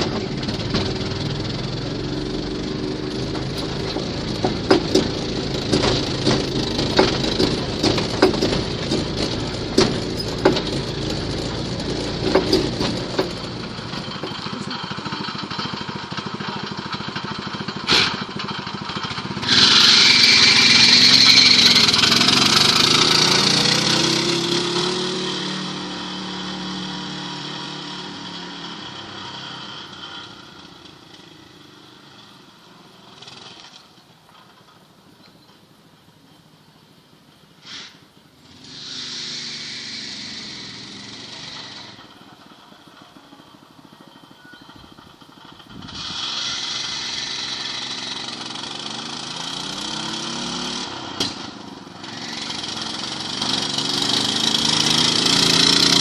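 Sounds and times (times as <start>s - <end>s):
small engine droning: 0.0s - 56.0s
clicks and knocks: 3.1s - 14.5s.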